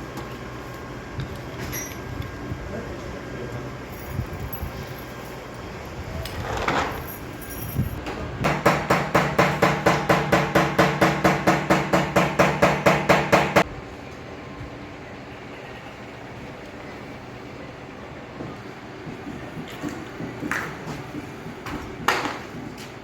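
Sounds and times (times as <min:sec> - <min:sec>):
hammer tapping on metal panel: 0:08.4 - 0:13.6.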